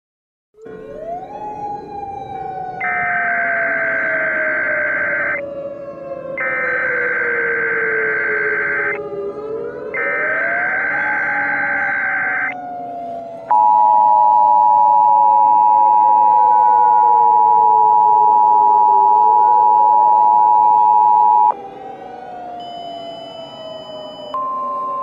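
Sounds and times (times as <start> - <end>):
siren wailing: 0.6 - 25.0
loud two-tone alert beep: 13.5 - 21.5, 22.6 - 25.0.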